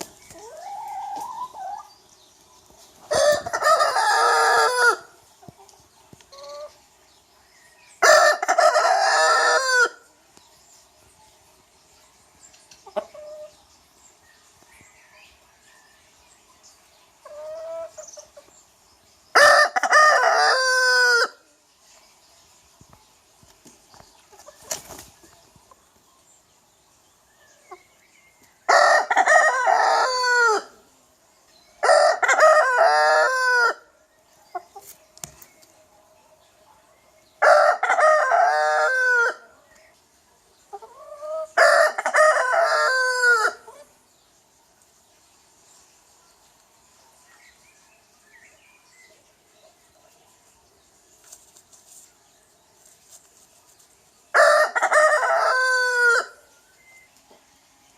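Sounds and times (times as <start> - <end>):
rooster crowing: 54.4 - 56.4.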